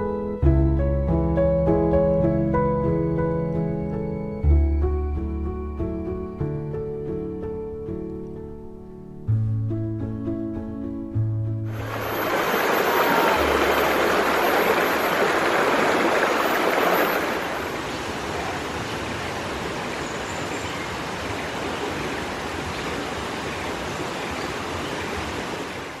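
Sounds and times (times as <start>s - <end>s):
flowing water rushing: 11.7s - 26.0s.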